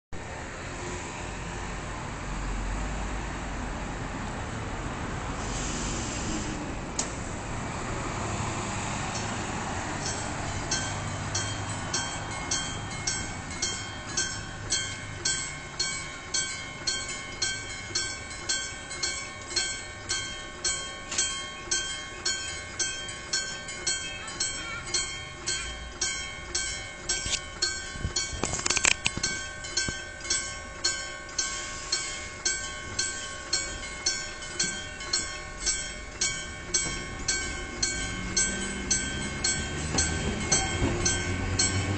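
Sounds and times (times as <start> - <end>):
level crossing bell ringing: 9.9 - 41.9.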